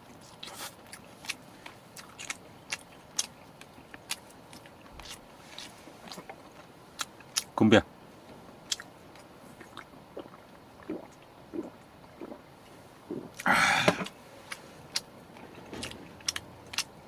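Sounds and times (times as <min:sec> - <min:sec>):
person gulping a drink: 0:09.6 - 0:14.2
breathy burst: 0:13.4 - 0:14.1.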